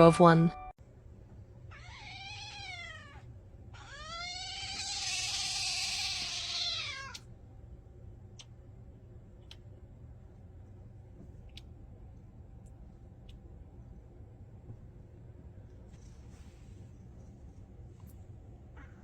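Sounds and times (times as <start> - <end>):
cat meowing: 1.7 - 7.2.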